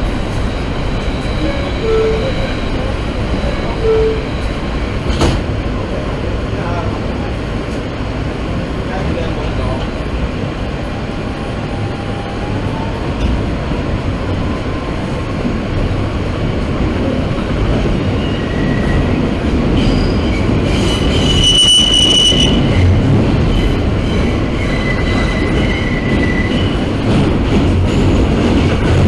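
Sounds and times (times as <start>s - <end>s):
subway train rumble: 0.0s - 29.0s
high-pitched wheel squeal: 0.5s - 2.7s, 19.8s - 22.9s, 24.2s - 26.7s.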